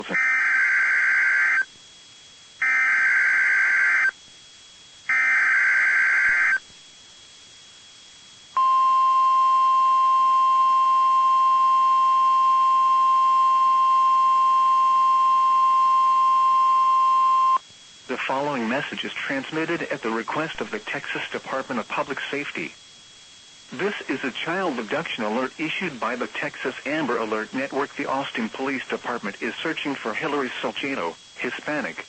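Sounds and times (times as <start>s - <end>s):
digital data tone bursts: 0.0s - 1.7s, 5.1s - 6.6s
steady attention tone: 8.5s - 22.9s.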